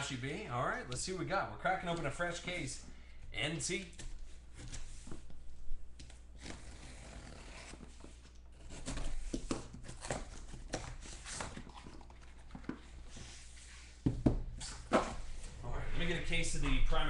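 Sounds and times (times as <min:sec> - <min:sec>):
cardboard and tape tearing: 0:06.4 - 0:12.0.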